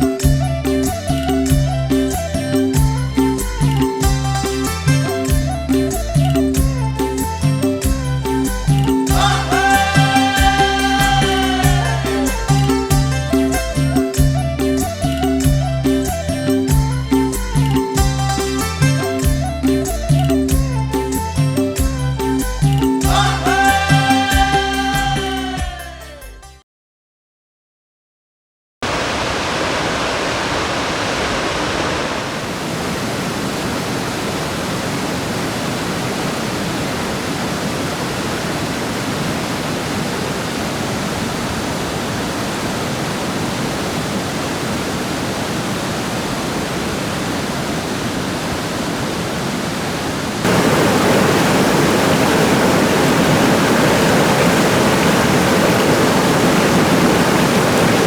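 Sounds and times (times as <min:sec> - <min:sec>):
running water rushing: 0:28.8 - 0:58.0.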